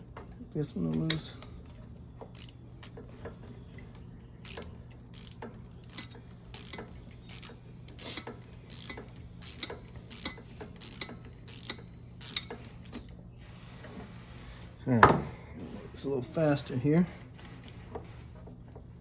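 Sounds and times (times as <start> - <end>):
ratchet wrench clicking: 2.3 - 3.0, 4.4 - 13.0.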